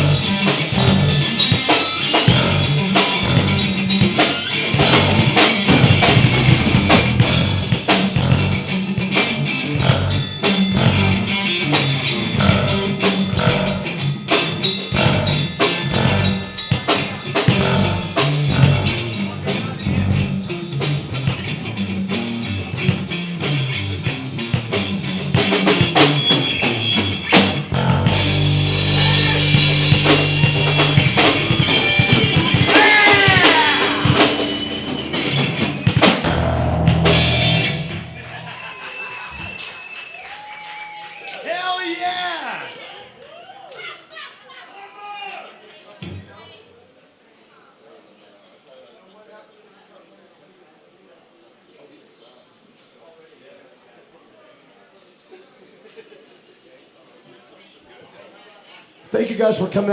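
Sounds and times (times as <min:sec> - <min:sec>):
live rock band playing: 0:00.0 - 0:40.6
drum kit beating: 0:00.0 - 0:40.7.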